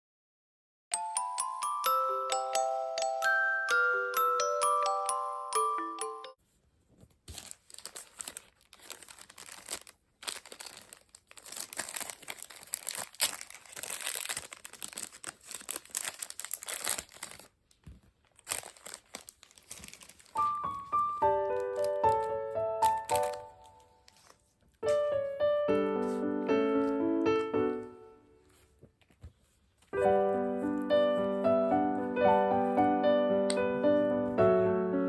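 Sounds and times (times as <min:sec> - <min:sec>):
music box background music: 0:00.9 - 0:06.4.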